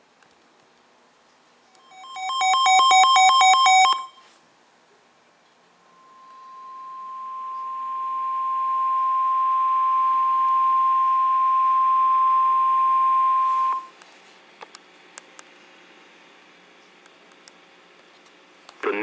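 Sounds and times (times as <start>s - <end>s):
steady high alert tone: 1.8s - 4.2s, 5.9s - 13.9s.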